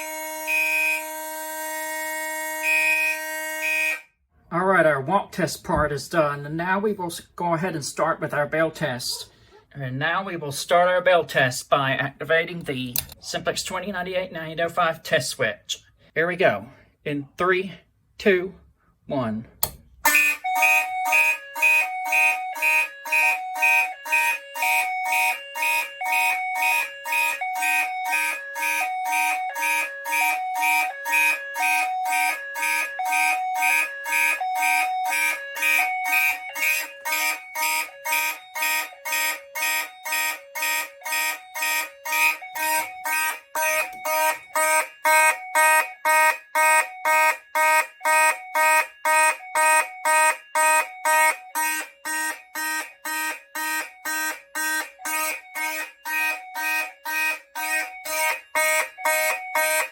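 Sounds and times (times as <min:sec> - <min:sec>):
fire alarm horns pulsing: 0:00.0 - 0:04.2, 0:19.6 - 0:59.9
lower two-note alarm tone: 0:20.1 - 0:59.9.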